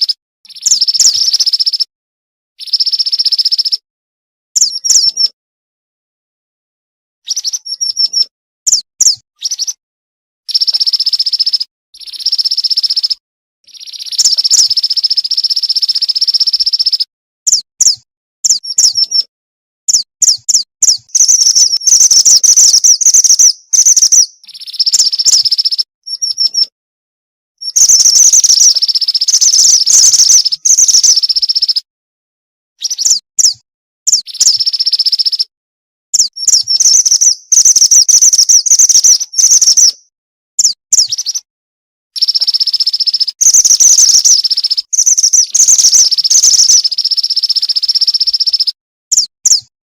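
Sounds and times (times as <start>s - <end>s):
bird chirps and buzzy trills: 0.0s - 1.9s, 4.6s - 5.3s, 10.5s - 19.2s, 19.9s - 26.6s, 27.6s - 31.8s, 32.8s - 35.5s, 36.2s - 40.0s, 42.2s - 49.3s.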